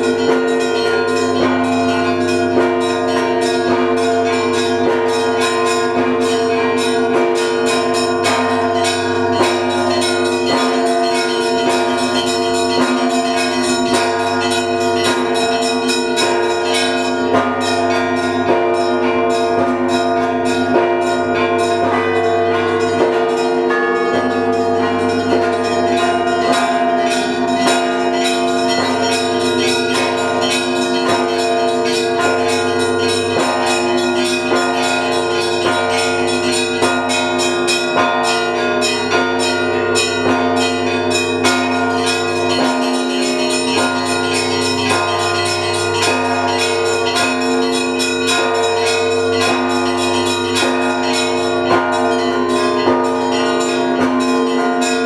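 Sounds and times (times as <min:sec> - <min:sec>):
church bells ringing: 0:00.0 - 0:55.0
deeper bells struck: 0:00.0 - 0:55.0.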